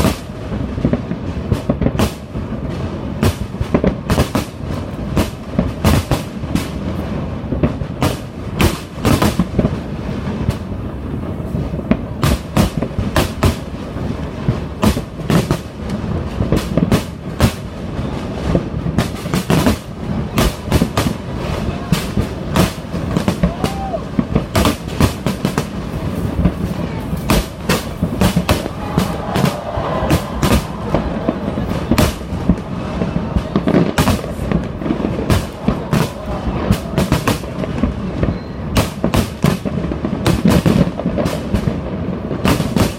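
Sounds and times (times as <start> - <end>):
firework bangs and crackles: 0.0 - 42.9
low rumble of booms: 13.8 - 42.8.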